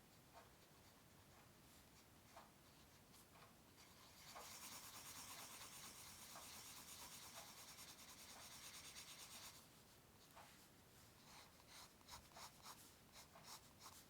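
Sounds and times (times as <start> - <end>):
pencil scratching on paper: 3.8 - 9.7, 11.2 - 14.0.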